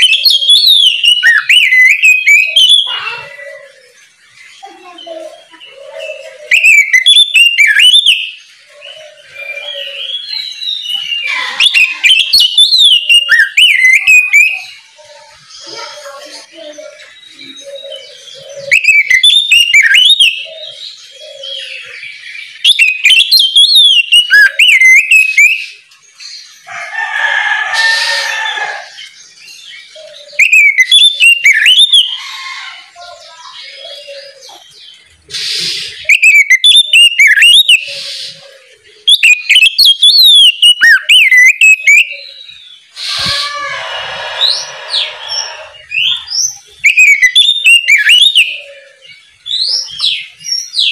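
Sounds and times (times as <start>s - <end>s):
bird singing whistled phrases: 0.0s - 3.7s, 5.8s - 14.8s, 16.9s - 25.8s, 29.9s - 32.2s, 35.4s - 38.4s, 39.0s - 50.9s
harsh raspy bird calls: 0.0s - 25.9s, 26.5s - 50.9s.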